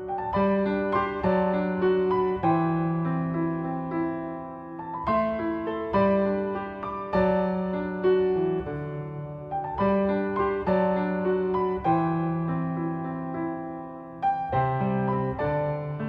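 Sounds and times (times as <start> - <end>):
gentle solo piano: 0.0 - 16.0.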